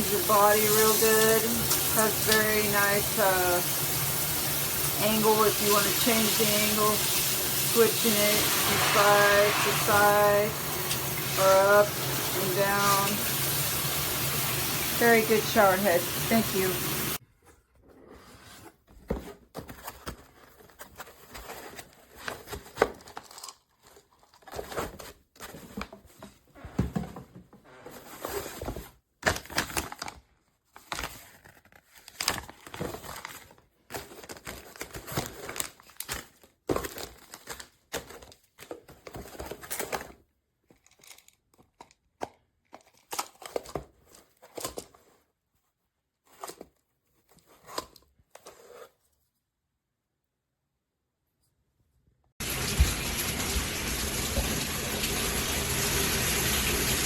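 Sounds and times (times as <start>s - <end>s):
rustling and crinkling: 17.2s - 49.6s.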